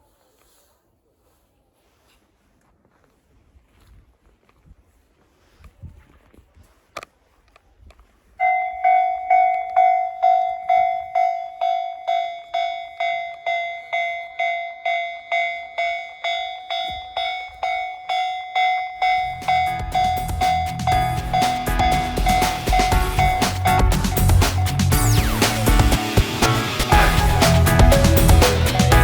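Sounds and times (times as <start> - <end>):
level-crossing warning bell: 8.4 - 29.0.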